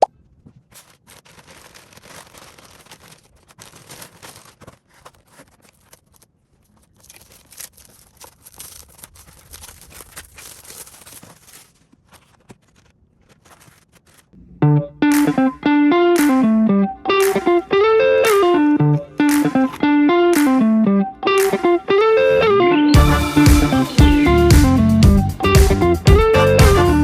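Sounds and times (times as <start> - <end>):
packaging rustling and crinkling: 0.2 - 14.4.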